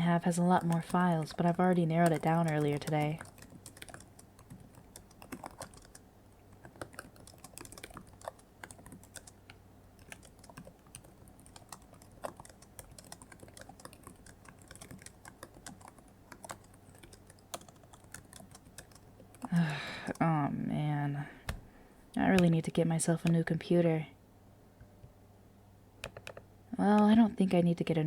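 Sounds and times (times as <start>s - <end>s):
computer keyboard typing: 0.0s - 20.3s, 26.0s - 26.4s.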